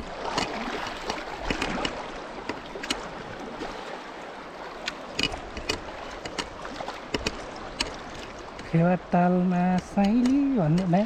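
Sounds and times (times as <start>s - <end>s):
sharp knocks or splashes: 0.0s - 4.0s
river water rushing: 0.0s - 11.0s.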